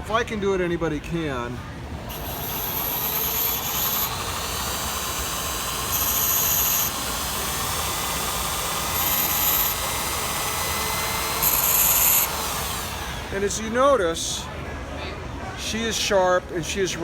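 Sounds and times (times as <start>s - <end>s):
drill bit grinding on wheel: 2.1s - 13.7s
bench grinder running: 2.1s - 13.8s.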